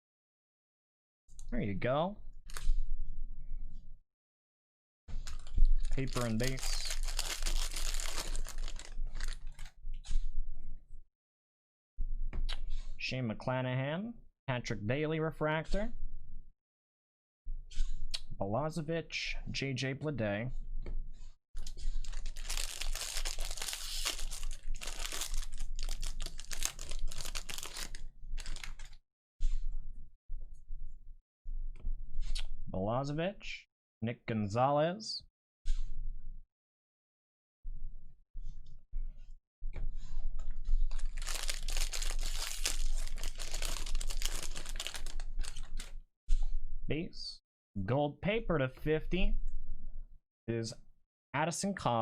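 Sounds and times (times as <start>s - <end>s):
wrapper crinkling and tearing: 5.2s - 9.7s, 21.6s - 29.0s, 40.9s - 45.9s.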